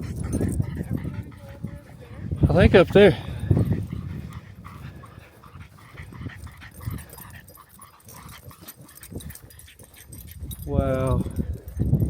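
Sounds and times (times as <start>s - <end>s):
dog panting: 0.0s - 12.0s.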